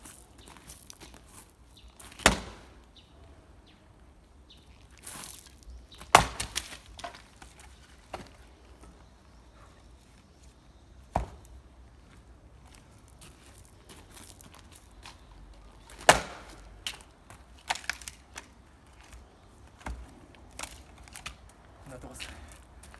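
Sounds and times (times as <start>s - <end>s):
axe chopping wood: 2.1s - 2.8s, 6.0s - 7.3s, 11.1s - 11.6s, 15.9s - 17.0s, 19.8s - 20.1s.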